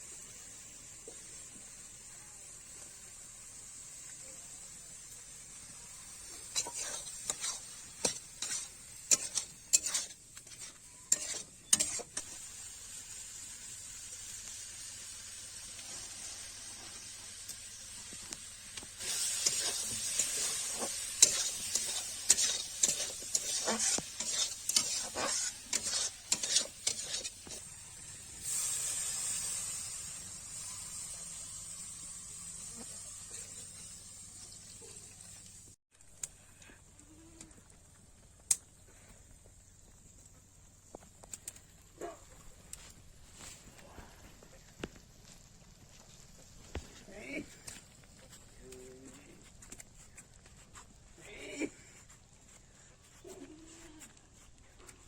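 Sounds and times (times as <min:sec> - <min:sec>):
food frying in hot oil: 0:00.0 - 0:36.2
spatula scraping a pan: 0:06.1 - 0:12.9, 0:18.8 - 0:29.8.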